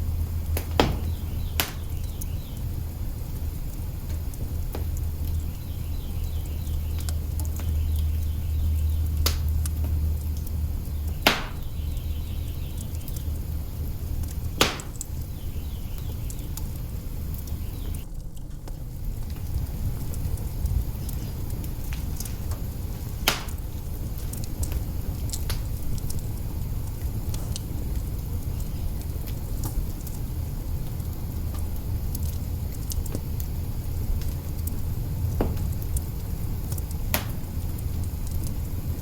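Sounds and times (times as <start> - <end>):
fire crackling: 0.0 - 39.0
fire low rumble: 0.0 - 39.0
sharp wood pops: 0.5 - 2.4, 9.2 - 10.5, 11.2 - 11.9, 14.2 - 15.3, 23.2 - 26.2, 37.1 - 37.4.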